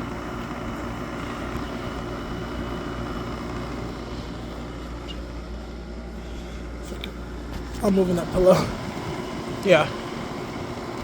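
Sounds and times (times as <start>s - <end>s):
air conditioner hum: 0.0s - 11.0s.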